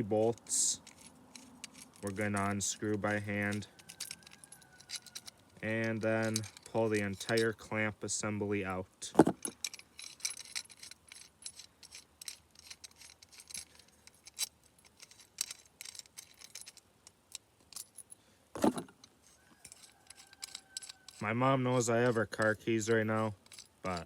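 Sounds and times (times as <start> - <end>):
metal scrape: 0.0 - 7.7, 18.6 - 24.0
small metal parts clinking: 0.0 - 7.8, 9.2 - 24.0.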